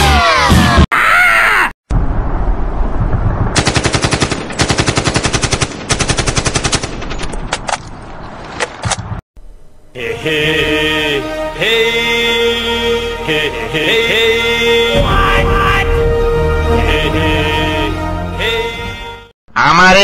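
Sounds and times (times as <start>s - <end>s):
rapid automatic gunfire: 3.6s - 7.2s.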